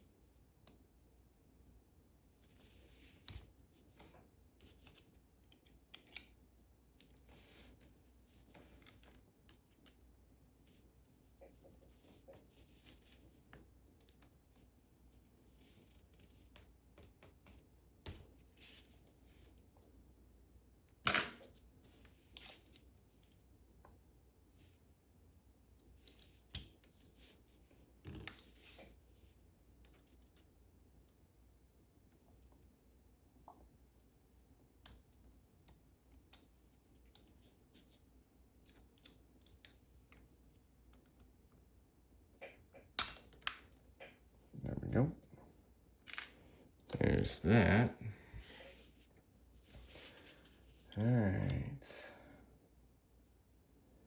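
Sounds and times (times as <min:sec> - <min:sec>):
faint steady hum: 0:00.0 - 0:54.0
small metal lock parts clicking: 0:05.5 - 0:06.4.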